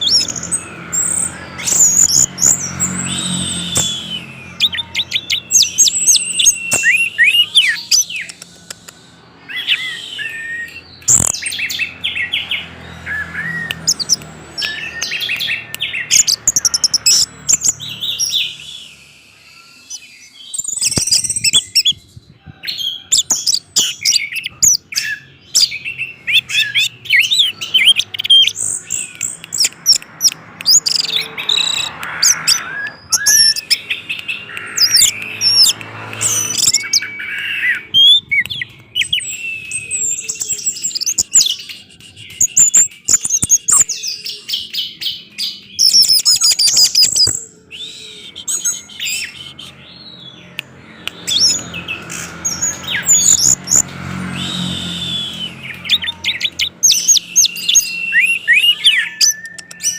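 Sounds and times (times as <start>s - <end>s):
thrush singing: 23.6s - 46.0s.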